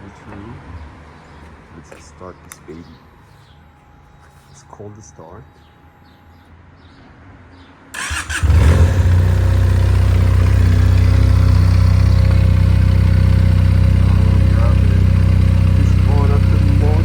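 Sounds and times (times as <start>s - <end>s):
motorcycle engine cranking: 8.0s - 17.0s
motorcycle engine idling: 8.0s - 17.0s.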